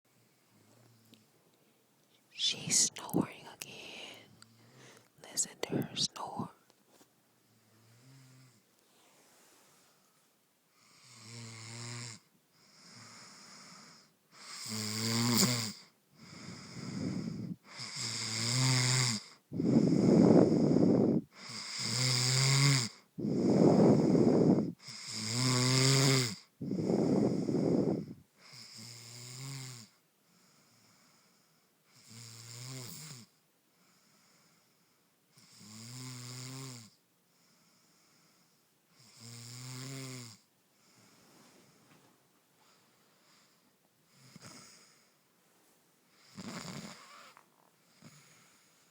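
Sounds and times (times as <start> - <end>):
woman snoring: 14.4 - 29.9, 35.4 - 36.9, 39.0 - 40.4, 46.2 - 48.5.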